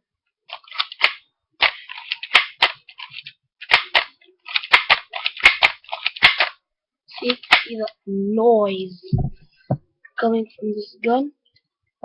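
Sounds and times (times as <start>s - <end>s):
toy pistol snapping and clacking: 0.5s - 6.6s, 7.2s - 7.8s
plastic mechanism rattling: 0.5s - 7.7s.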